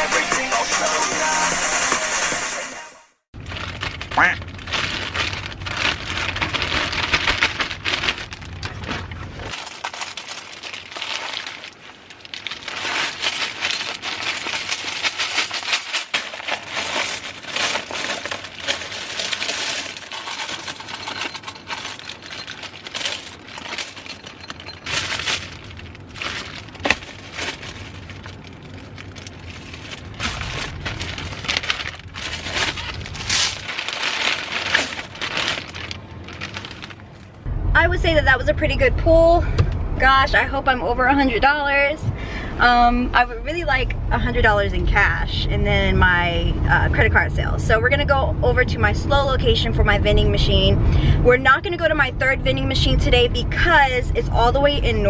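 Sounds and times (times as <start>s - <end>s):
coins clinking and jingling: 9.5s - 11.6s, 12.5s - 28.1s.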